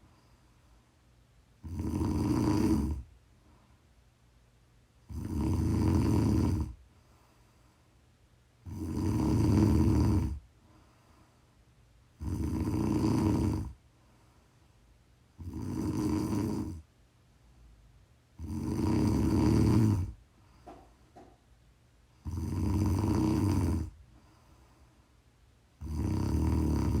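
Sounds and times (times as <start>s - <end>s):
person snoring: 1.6s - 3.1s, 5.1s - 6.8s, 8.6s - 10.4s, 12.2s - 13.8s, 15.4s - 16.9s, 18.4s - 20.2s, 22.2s - 24.0s, 25.8s - 27.0s.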